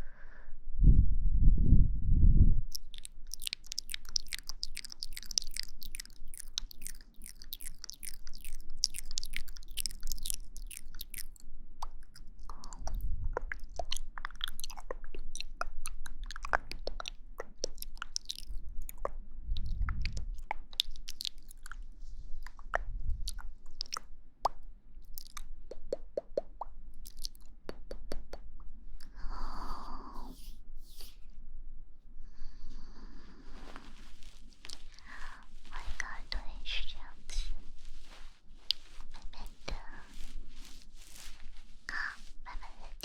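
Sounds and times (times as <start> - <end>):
crisp crackling clicks: 2.7 - 21.8.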